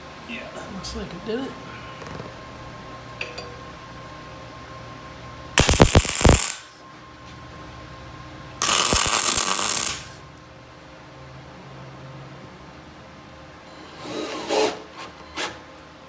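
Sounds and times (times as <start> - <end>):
welding crackling: 5.6 - 6.7, 8.6 - 10.2.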